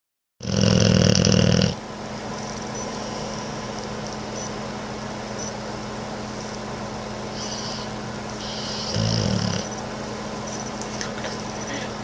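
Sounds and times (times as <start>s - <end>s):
dog snoring: 0.4s - 1.8s, 2.8s - 3.9s, 7.3s - 9.8s
steady low hum: 0.4s - 12.0s.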